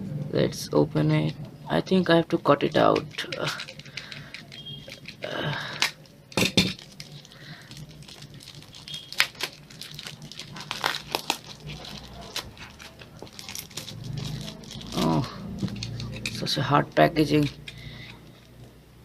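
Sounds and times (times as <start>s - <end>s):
plastic packaging clicks and snaps: 2.9s - 16.4s.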